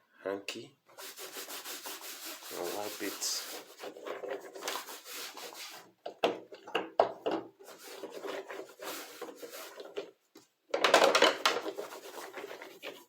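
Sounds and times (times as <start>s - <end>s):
cloth wiping keyboard keys: 1.0s - 5.9s, 7.6s - 10.0s, 11.6s - 13.0s.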